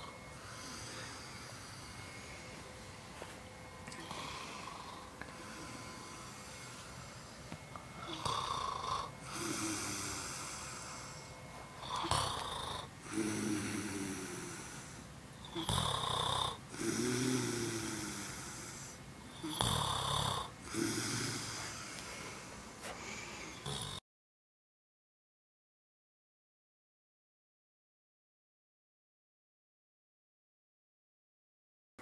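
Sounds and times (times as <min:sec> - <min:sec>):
man snoring: 0:00.0 - 0:02.7, 0:03.9 - 0:24.0.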